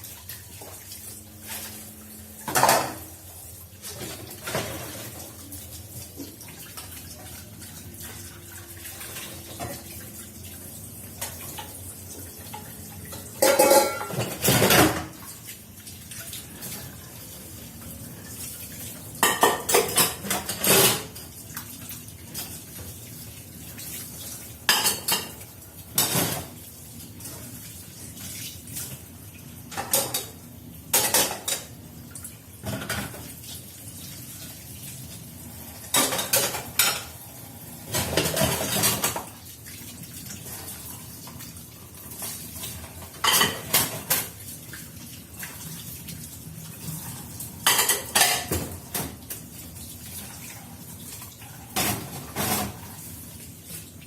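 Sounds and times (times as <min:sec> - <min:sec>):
faint running water: 0:00.0 - 0:54.0
dishes and cutlery clattering: 0:02.4 - 0:03.1, 0:03.8 - 0:05.2, 0:12.5 - 0:15.2, 0:19.2 - 0:21.2, 0:24.7 - 0:25.4, 0:26.0 - 0:26.5, 0:29.7 - 0:31.7, 0:35.9 - 0:37.2, 0:37.9 - 0:39.3, 0:42.2 - 0:44.4, 0:47.6 - 0:49.3, 0:51.7 - 0:52.8.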